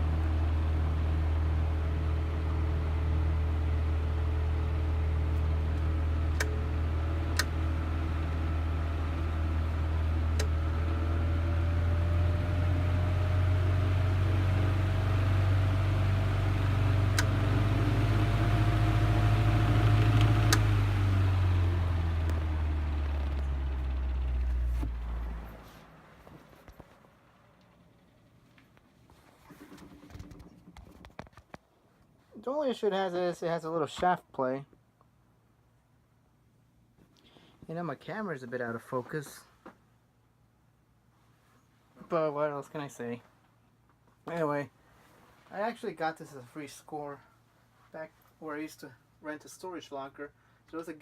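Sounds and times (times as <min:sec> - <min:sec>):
table fan running: 0:00.0 - 0:26.9
rising whine: 0:00.0 - 0:28.1.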